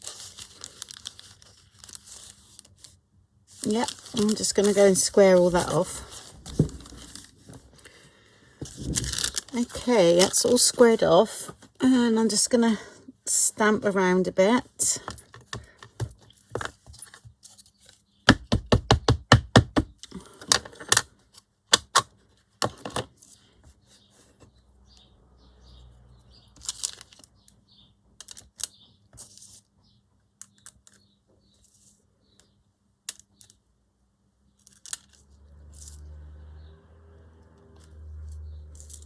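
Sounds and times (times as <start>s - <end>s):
paper handling: 0.0s - 11.5s.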